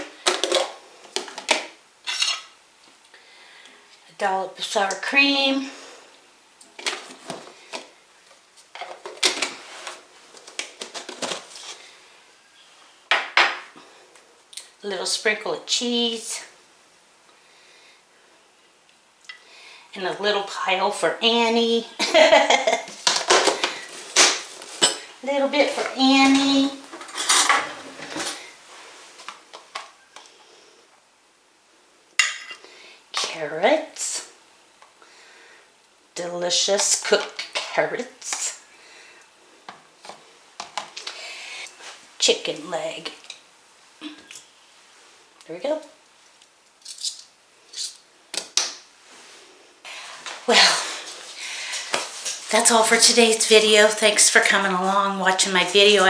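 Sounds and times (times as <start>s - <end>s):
spoon clinking and scraping dishes: 2.1s - 2.6s, 27.0s - 27.8s, 32.2s - 32.6s
utensil scraping a plate: 2.1s - 2.6s.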